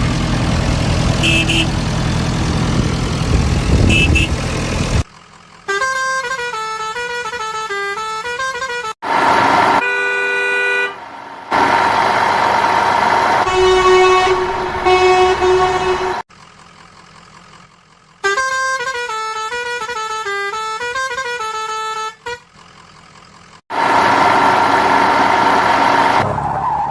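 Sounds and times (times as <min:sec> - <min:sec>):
vehicle horn honking: 0:01.2 - 0:01.8, 0:03.7 - 0:04.4, 0:05.7 - 0:09.0, 0:09.6 - 0:11.0, 0:13.4 - 0:16.2, 0:18.2 - 0:22.5
rushing noise: 0:11.0 - 0:16.2.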